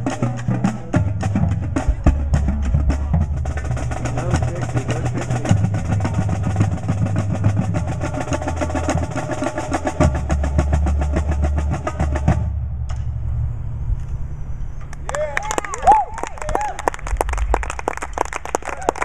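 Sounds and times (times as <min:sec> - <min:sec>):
fast drum strokes: 0:00.0 - 0:12.8
low bass line: 0:00.0 - 0:15.1.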